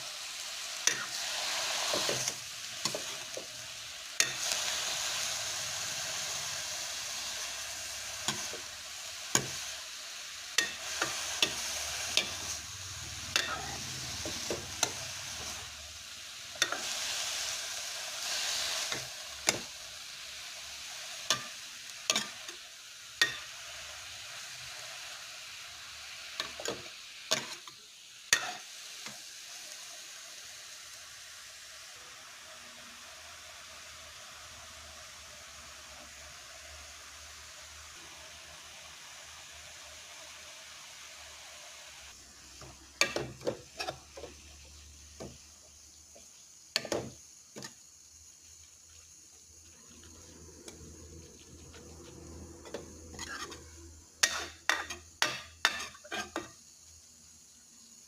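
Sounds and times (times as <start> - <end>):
greens sizzling in a pan: 0.0 - 58.0.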